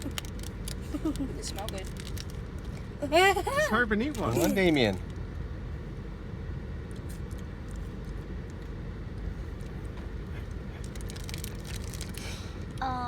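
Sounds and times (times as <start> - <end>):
faint clicks and crackles: 0.0 - 2.9, 6.9 - 12.9
vehicle engine rumble: 0.0 - 13.0.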